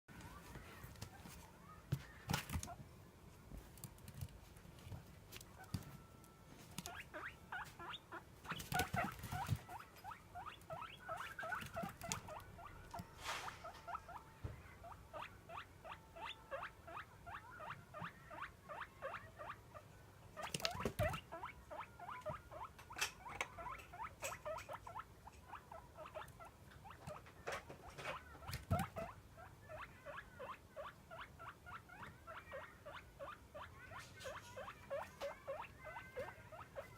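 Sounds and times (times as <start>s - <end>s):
guinea pig squeaking: 0.1s - 2.8s, 4.8s - 36.9s.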